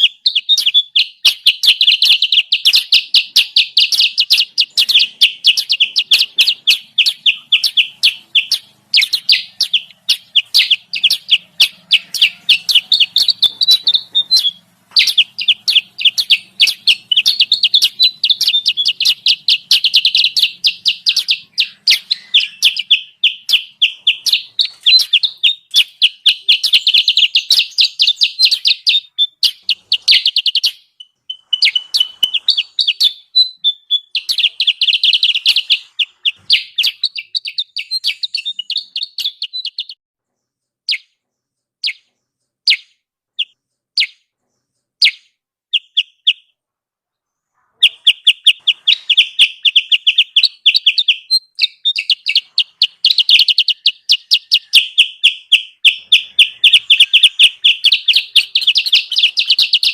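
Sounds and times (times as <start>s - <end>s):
bird chattering chirps: 0.0s - 46.6s, 47.3s - 59.9s.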